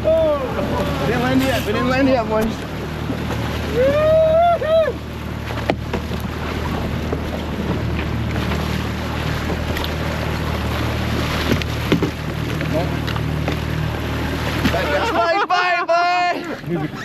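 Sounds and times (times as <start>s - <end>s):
boat engine running: 0.0s - 17.0s
water noise: 0.0s - 17.0s
wind: 0.0s - 17.0s.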